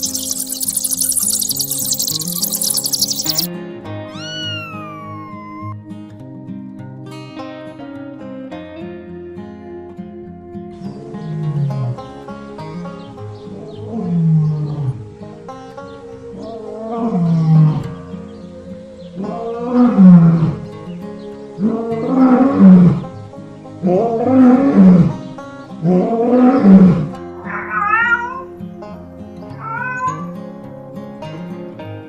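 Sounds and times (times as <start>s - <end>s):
animal calling: 0.0s - 3.5s, 4.1s - 5.8s, 25.9s - 28.5s, 29.5s - 30.4s
background guitar music: 0.0s - 32.0s.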